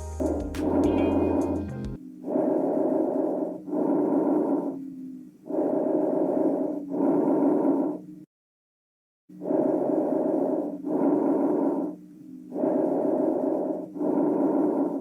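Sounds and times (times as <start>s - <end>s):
soft rushing breath sounds: 2.2s - 8.0s, 9.4s - 15.0s.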